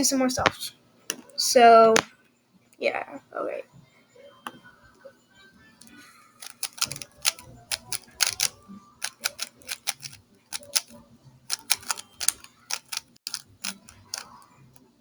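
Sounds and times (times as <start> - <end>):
puzzle cube clicking as turned: 6.4 - 14.5.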